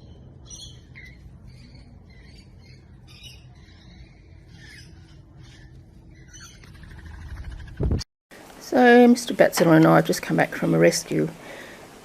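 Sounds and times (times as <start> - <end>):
bird chirping and squawking: 0.0 - 7.9
low steady background rumble: 0.0 - 12.0.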